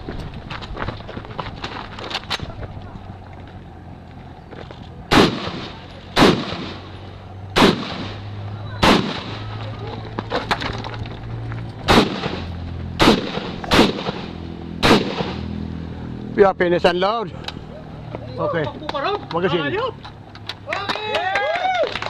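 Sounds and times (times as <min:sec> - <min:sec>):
gunshots with echo: 0:05.1 - 0:06.9, 0:07.5 - 0:09.5, 0:11.9 - 0:15.5.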